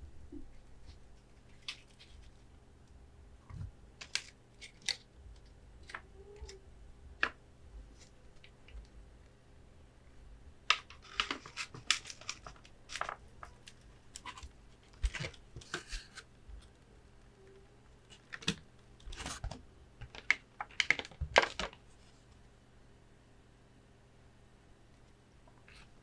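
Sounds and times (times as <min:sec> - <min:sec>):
hands tapping cards and plastic: 0:10.7 - 0:16.7.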